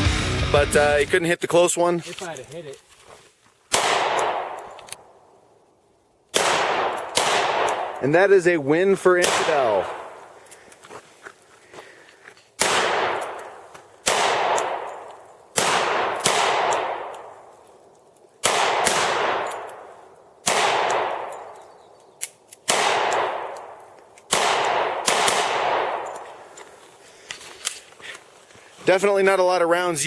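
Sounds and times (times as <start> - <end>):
pistol shots with echo: 3.7 - 4.7, 6.3 - 8.0, 9.2 - 10.2, 12.6 - 17.5, 18.4 - 21.6, 22.6 - 26.2.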